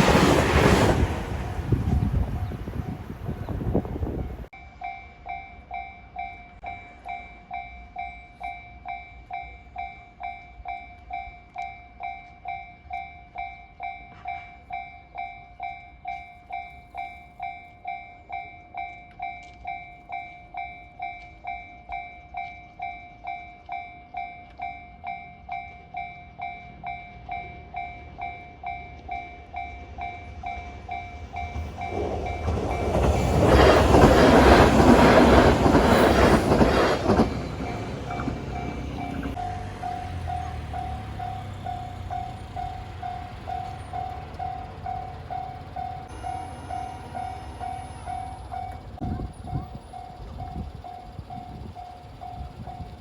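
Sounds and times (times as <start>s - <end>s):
train rushing past: 0.0s - 4.5s, 26.8s - 53.0s
level crossing alarm ringing: 30.6s - 53.0s.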